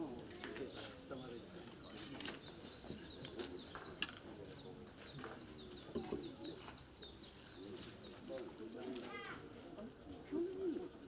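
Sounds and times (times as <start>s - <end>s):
small birds chirping: 0.6s - 8.9s.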